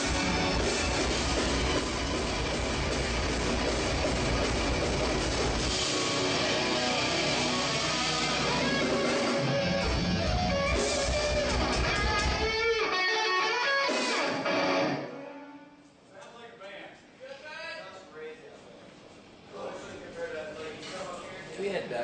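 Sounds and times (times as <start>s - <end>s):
heavy rock band playing: 0.0s - 15.4s
distorted electric guitar: 0.0s - 15.7s.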